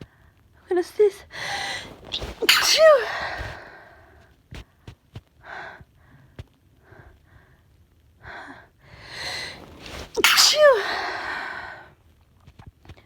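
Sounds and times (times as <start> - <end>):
woman sniffling and breathing: 1.3 - 4.1, 8.3 - 11.9.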